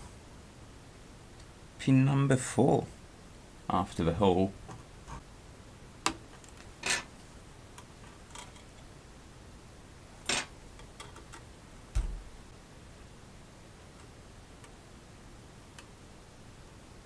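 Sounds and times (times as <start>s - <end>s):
low thump: 11.9s - 12.3s.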